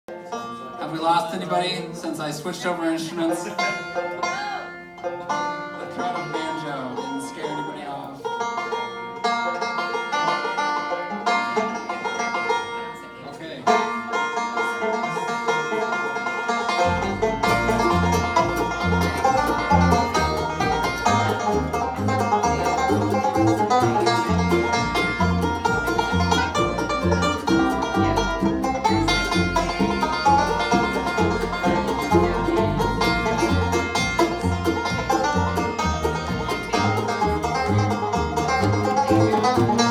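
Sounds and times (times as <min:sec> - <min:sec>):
banjo picking quickly: 0:00.1 - 0:39.9
low bass notes: 0:16.8 - 0:39.9.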